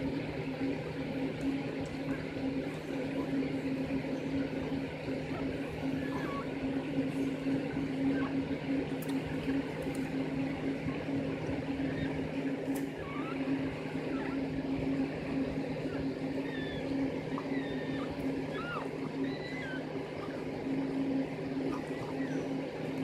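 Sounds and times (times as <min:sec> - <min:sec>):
steady low hum: 0:00.0 - 0:23.0
puppies squeaking: 0:05.3 - 0:06.6, 0:13.0 - 0:14.4, 0:15.8 - 0:20.4, 0:21.6 - 0:22.5.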